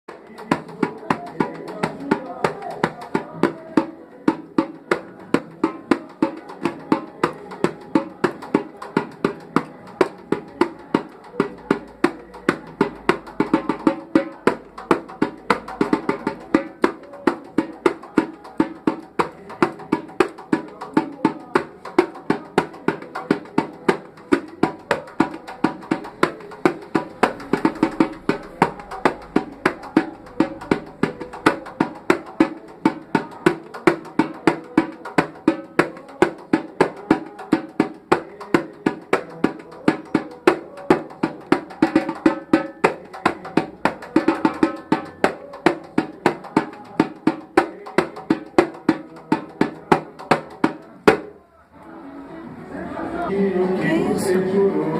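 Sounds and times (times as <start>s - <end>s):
samba percussion playing: 0.1s - 51.4s, 52.9s - 54.9s.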